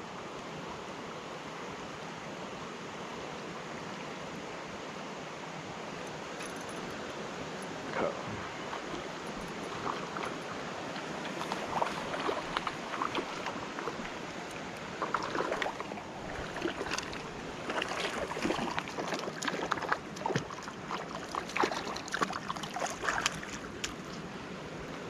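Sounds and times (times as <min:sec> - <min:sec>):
river water running over rocks: 0:00.0 - 0:25.0.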